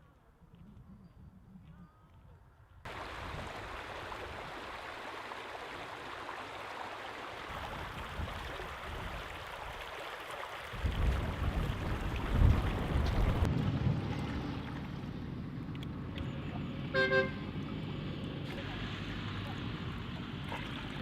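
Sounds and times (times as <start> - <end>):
flowing water rushing: 2.9 - 13.5, 16.5 - 21.0.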